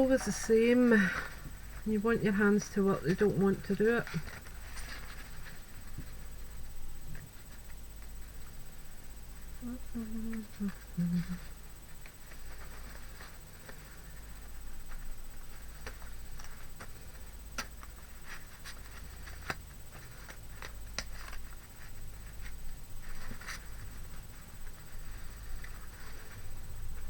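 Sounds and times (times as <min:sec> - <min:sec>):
paper rustling: 0:12.1 - 0:27.0.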